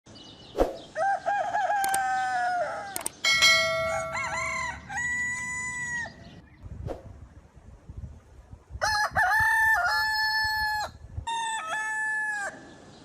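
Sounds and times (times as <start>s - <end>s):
roosters crowing: 0.9s - 6.4s, 8.8s - 12.8s
sharp click: 1.8s - 2.0s, 3.0s - 3.2s.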